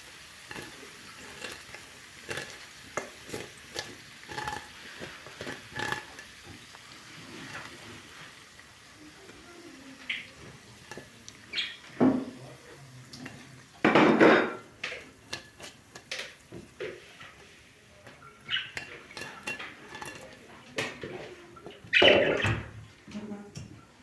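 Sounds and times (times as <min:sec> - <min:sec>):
dishes and cutlery clattering: 0:00.4 - 0:06.7, 0:10.4 - 0:17.5, 0:18.1 - 0:22.8.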